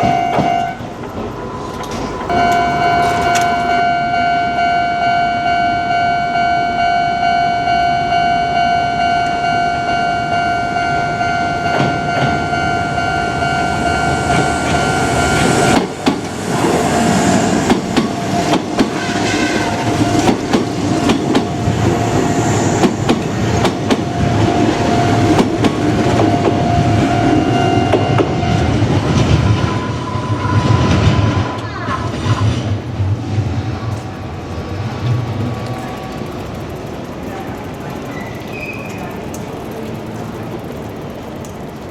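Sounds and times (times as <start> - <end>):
level crossing bell ringing: 0.0 - 15.8
train wheels clacking over rail joints: 14.1 - 28.3, 33.8 - 41.9.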